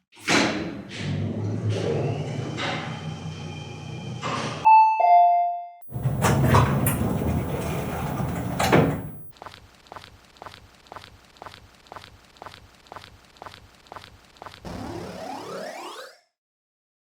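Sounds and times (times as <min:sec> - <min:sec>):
rumbling clatter: 0:05.9 - 0:09.3.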